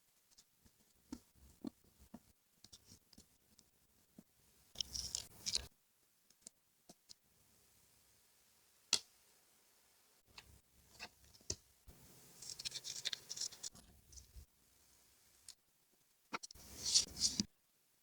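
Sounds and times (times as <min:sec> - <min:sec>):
paper scratching and rustling: 0:12.4 - 0:13.8, 0:16.6 - 0:17.5.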